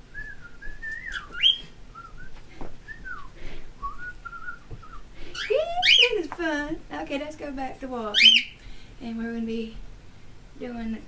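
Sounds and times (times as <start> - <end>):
cockatiel whistling: 0.1 - 2.3, 8.2 - 8.6.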